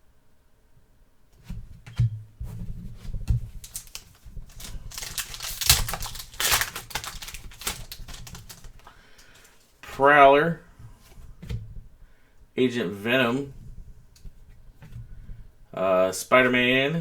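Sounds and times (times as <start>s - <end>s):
packaging crackling: 3.3s - 9.8s
cards clicking and sliding: 3.6s - 9.6s.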